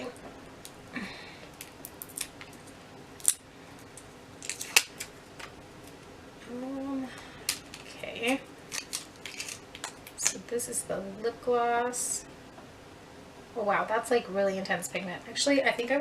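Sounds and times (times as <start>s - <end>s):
plastic packaging clicking and snapping: 1.5s - 5.6s, 7.4s - 10.4s
person humming: 6.4s - 7.3s.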